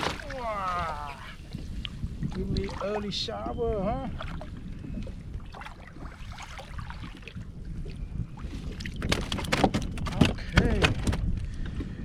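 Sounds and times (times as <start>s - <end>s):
wind and water noise: 0.0s - 12.0s.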